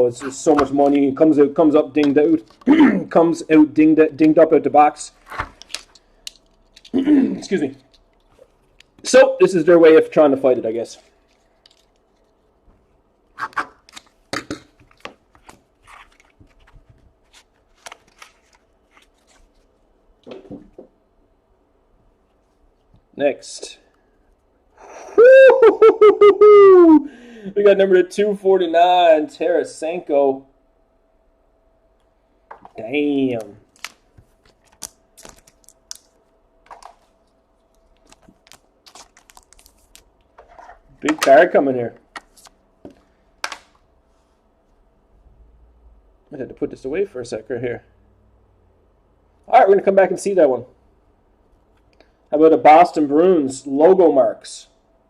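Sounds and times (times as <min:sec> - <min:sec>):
trading cards rustling and clicking: 0:11.0 - 0:12.5, 0:13.4 - 0:19.7, 0:33.3 - 0:41.4.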